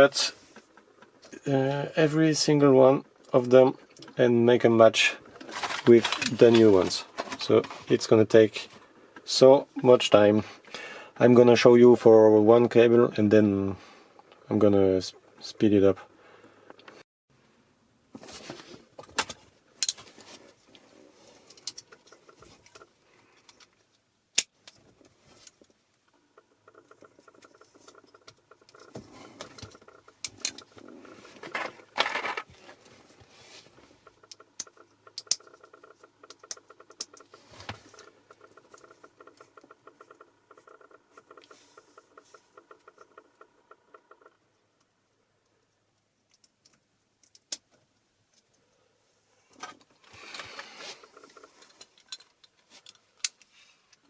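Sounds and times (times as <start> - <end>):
rustling: 3.8 - 9.3, 18.1 - 23.9, 24.8 - 44.4
wire snipping and clicks: 34.2 - 35.5.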